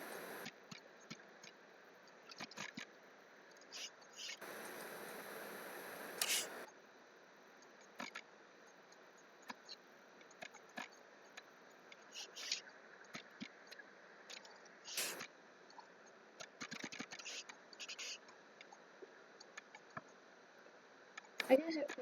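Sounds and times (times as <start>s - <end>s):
mouse and keyboard clicks: 6.2s - 6.6s, 14.3s - 15.3s.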